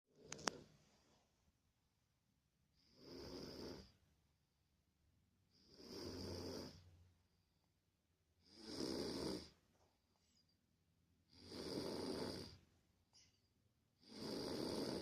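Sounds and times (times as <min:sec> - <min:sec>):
slow regular snoring: 0:02.7 - 0:04.1, 0:05.5 - 0:07.0, 0:08.4 - 0:09.6, 0:11.3 - 0:12.7, 0:14.0 - 0:15.0.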